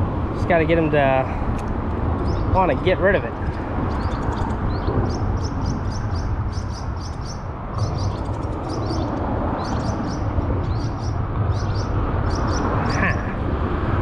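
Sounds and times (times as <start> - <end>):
road traffic rumble: 0.0 - 14.0
small bird chirping: 2.2 - 2.6, 3.4 - 13.2.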